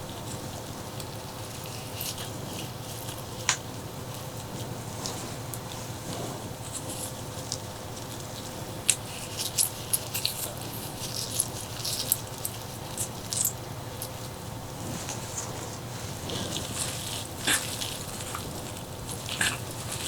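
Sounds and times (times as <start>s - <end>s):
faint steady hum: 0.0s - 20.0s
wet chewing: 0.0s - 20.0s
crunchy bite: 16.3s - 20.0s.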